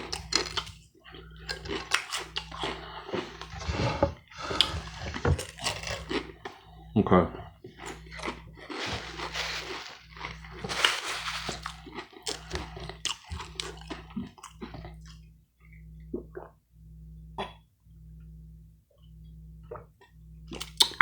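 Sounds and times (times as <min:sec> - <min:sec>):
crackly chewing: 0:00.0 - 0:15.2.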